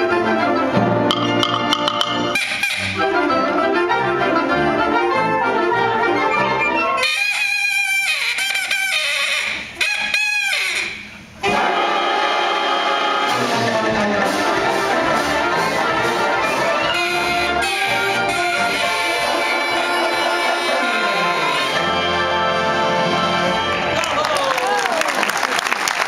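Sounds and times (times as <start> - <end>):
brass: 0.0 - 24.0
wind band playing: 0.0 - 24.1
short bending pitched calls: 1.2 - 3.1, 6.6 - 12.0, 16.6 - 21.9.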